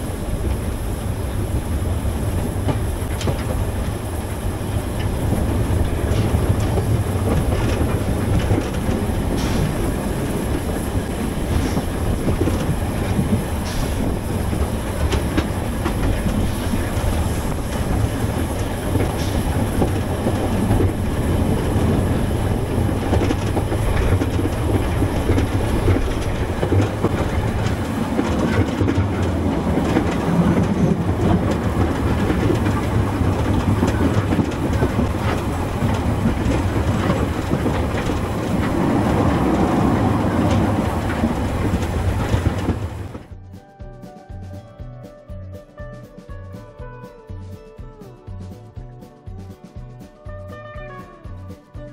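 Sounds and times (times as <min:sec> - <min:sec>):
train wheels clattering on rails: 0:00.0 - 0:43.3
steady noise of moving train: 0:00.0 - 0:51.9.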